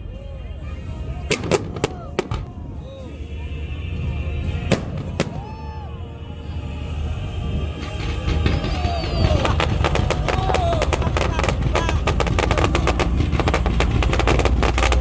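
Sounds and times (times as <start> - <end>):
background music: 0.0 - 15.0
fireworks cracking: 0.7 - 2.8, 4.0 - 5.8, 7.5 - 15.0.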